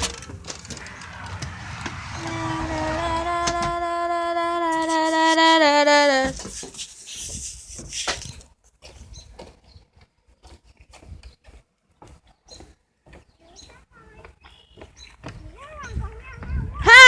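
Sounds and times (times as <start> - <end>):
brief rush of noise: 0.0 - 5.2.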